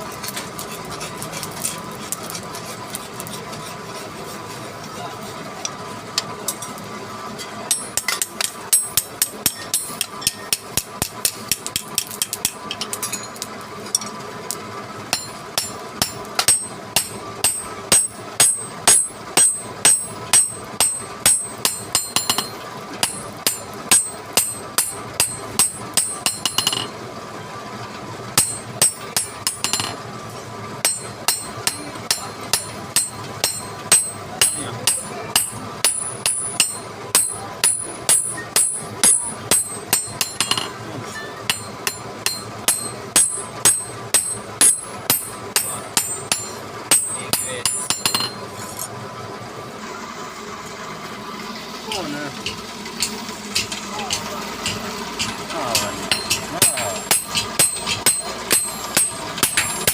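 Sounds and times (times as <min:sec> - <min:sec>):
hammer striking metal: 0:07.4 - 0:14.1, 0:15.1 - 0:27.0, 0:28.4 - 0:30.0, 0:30.8 - 0:48.9, 0:51.9 - 0:59.9.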